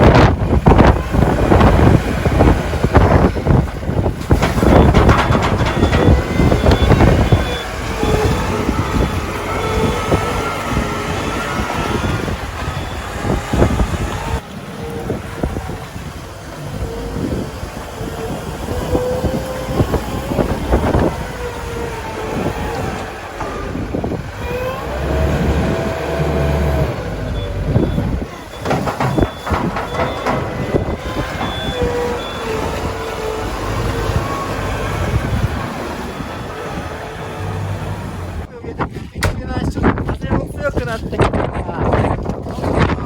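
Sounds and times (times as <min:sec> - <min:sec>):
loader diesel engine under load: 0:00.0 - 0:40.0
bucket clanking: 0:03.2 - 0:07.5, 0:28.5 - 0:32.3
reversing alarm beeping: 0:04.6 - 0:10.6, 0:27.3 - 0:32.8.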